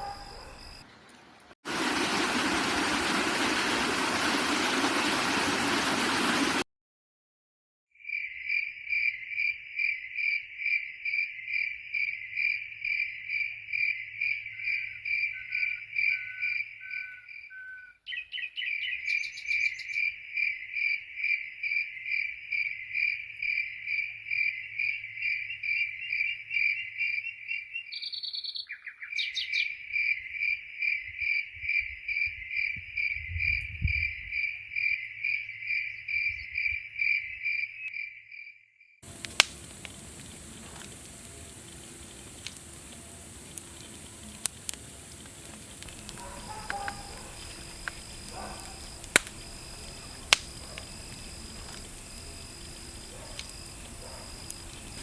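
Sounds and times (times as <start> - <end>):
cricket chirping: 0.0 - 0.8, 8.0 - 17.6, 18.6 - 28.1, 28.8 - 55.0
loud even hiss: 1.7 - 6.6, 39.0 - 55.0.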